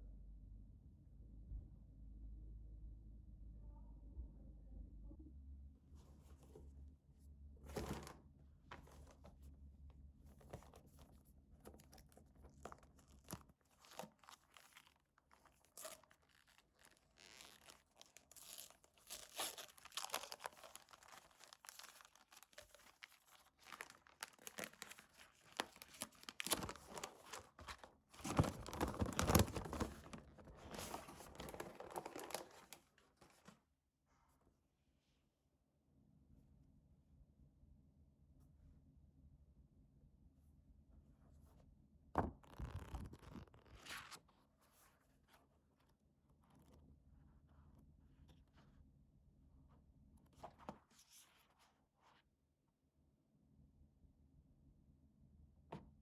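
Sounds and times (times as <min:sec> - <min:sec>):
wrapping paper crinkling and tearing: 0:11.7 - 0:33.4.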